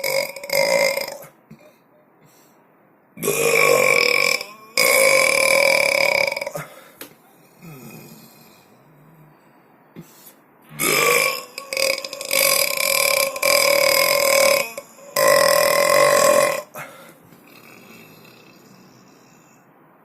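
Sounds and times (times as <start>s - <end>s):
person burping: 0.0s - 1.7s, 3.2s - 6.9s, 7.5s - 8.7s, 10.7s - 19.1s.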